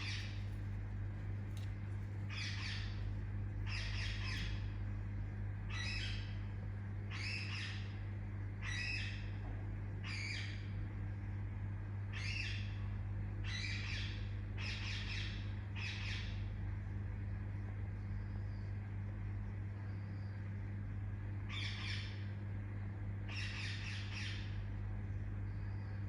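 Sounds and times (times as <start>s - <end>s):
parakeet chirping calls: 0.0s - 0.5s, 2.3s - 4.7s, 7.1s - 7.9s, 13.4s - 16.4s, 23.3s - 24.6s
low hum: 0.0s - 14.6s.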